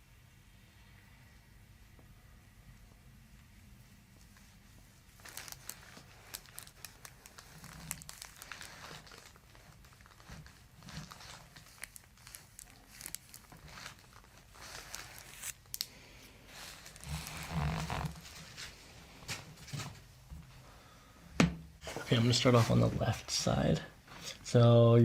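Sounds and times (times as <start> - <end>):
rustling and crinkling: 3.8 - 20.7, 21.8 - 24.5.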